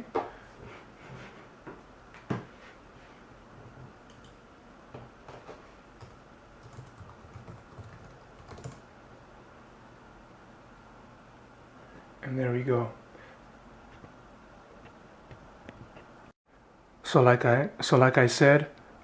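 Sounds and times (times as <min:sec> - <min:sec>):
computer keyboard typing: 0:04.1 - 0:04.4, 0:06.0 - 0:08.8.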